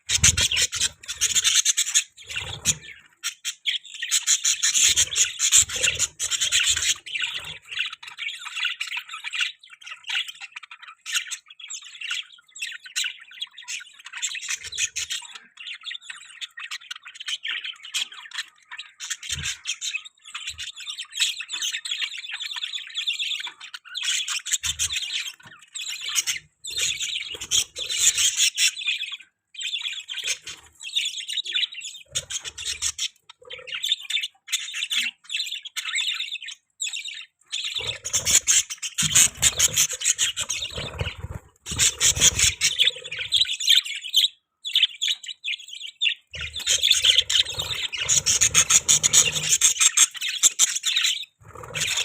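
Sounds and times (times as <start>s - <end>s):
budgies chirping and warbling: 0.0s - 52.0s.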